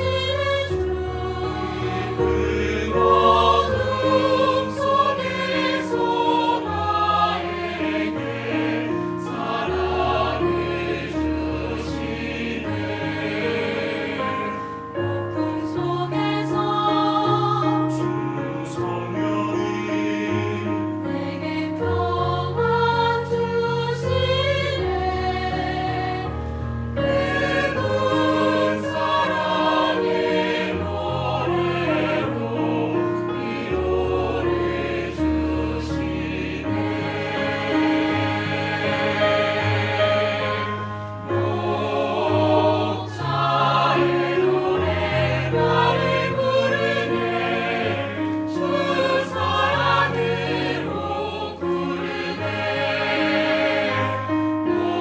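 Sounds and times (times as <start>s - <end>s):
mixed choir singing a hymn: 0.0s - 55.0s.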